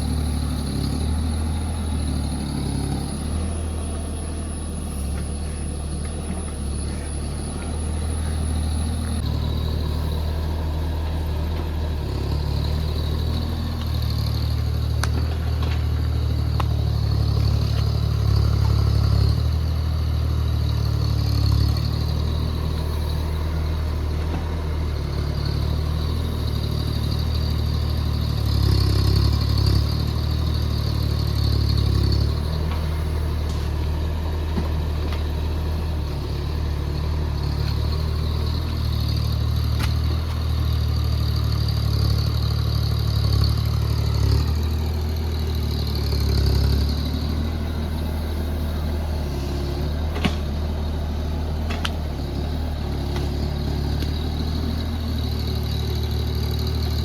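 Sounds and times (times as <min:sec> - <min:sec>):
excavator diesel engine running: 0:00.0 - 0:57.0.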